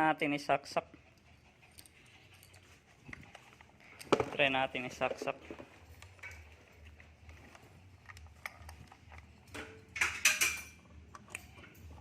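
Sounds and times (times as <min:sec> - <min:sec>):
plastic clatter: 0:04.0 - 0:06.5
plastic charger clicks and rattles: 0:07.3 - 0:11.4.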